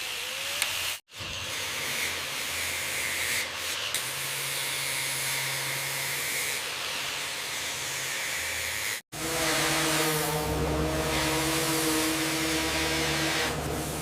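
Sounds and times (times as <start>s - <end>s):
high-pressure water jet hissing: 9.2s - 14.0s.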